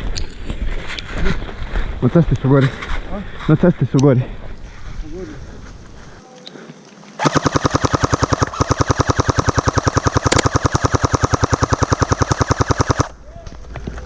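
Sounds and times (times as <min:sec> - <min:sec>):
airsoft gun firing full auto: 0:07.2 - 0:13.2.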